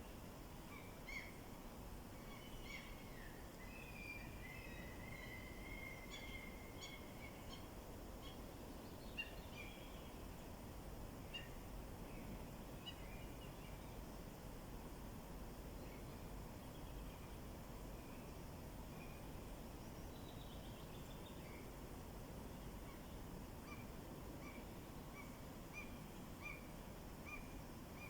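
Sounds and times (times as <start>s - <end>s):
faint birdsong: 2.2s - 10.6s, 15.7s - 21.8s.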